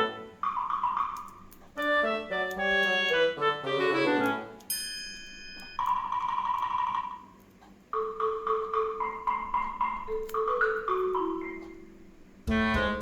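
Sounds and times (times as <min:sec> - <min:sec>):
mallet percussion tune: 0:08.0 - 0:11.9.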